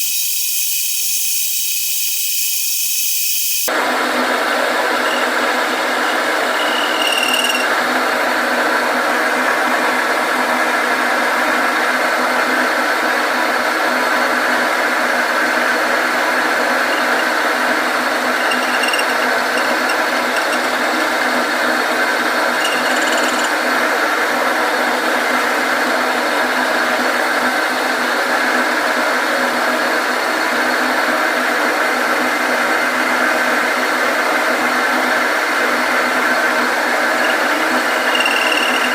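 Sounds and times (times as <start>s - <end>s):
high-pitched squeal: 0.0s - 3.7s, 4.9s - 7.8s, 16.7s - 20.9s, 36.9s - 38.9s
machine tool cutting metal: 0.0s - 3.7s, 4.9s - 7.8s, 16.8s - 21.5s, 22.4s - 23.7s, 36.6s - 38.9s.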